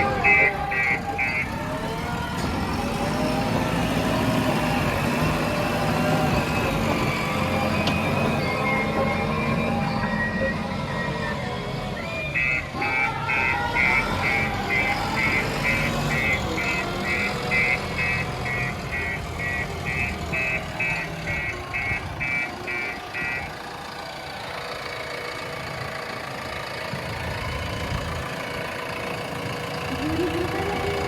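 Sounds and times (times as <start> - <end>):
reversing alarm beeping: 0.0 - 23.6
diesel engine idling: 0.0 - 31.0.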